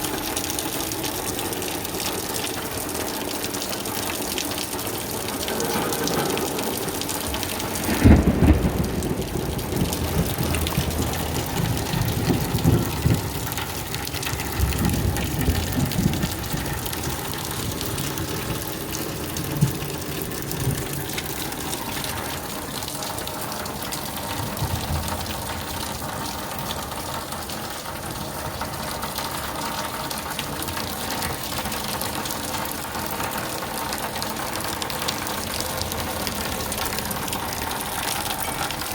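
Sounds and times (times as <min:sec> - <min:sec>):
rain falling steadily: 0:00.0 - 0:38.9
thunder rumbling: 0:04.6 - 0:26.9.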